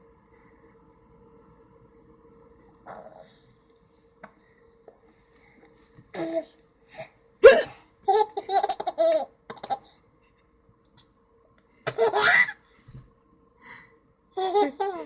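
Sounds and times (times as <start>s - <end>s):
child hiccuping: 7.4s - 7.8s
child laughing: 11.9s - 12.6s, 14.4s - 15.0s.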